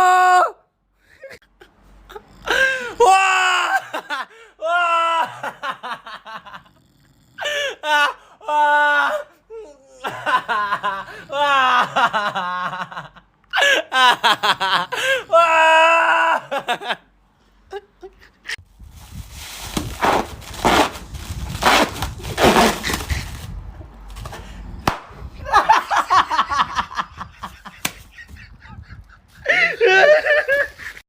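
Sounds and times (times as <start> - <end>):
person laughing: 1.0 - 6.7, 9.6 - 15.6, 16.2 - 18.6, 22.4 - 24.5, 25.3 - 31.0.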